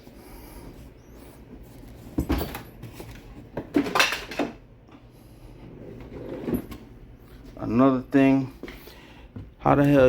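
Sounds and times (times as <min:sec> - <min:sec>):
tools clattering in a toolbox: 0:03.7 - 0:04.6.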